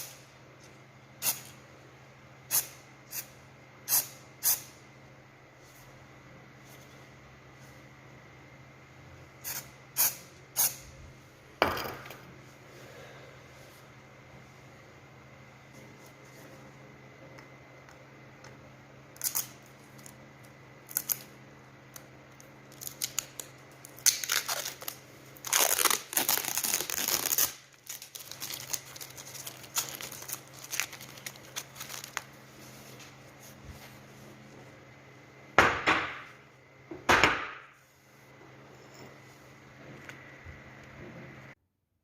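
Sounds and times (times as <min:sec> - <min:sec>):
crinkling and tearing handling noise: 0:22.7 - 0:33.2
sharp rips: 0:24.0 - 0:32.2.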